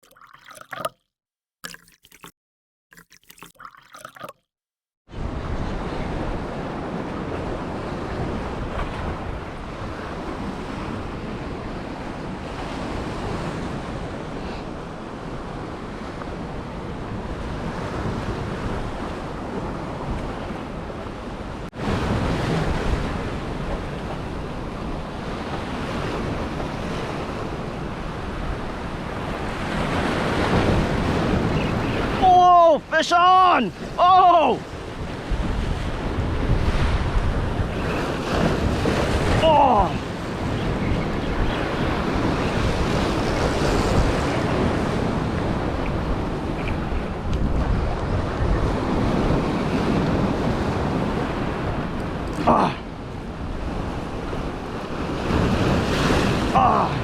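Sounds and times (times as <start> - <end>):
waves washing against rocks: 29.2 - 40.8, 54.2 - 57.0
wind buffeting microphone: 34.6 - 52.3.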